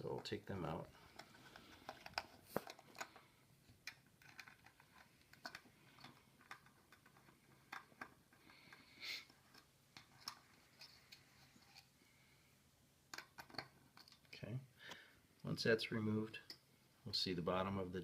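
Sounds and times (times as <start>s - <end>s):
handling plastic parts: 0.0s - 11.9s, 13.1s - 14.4s.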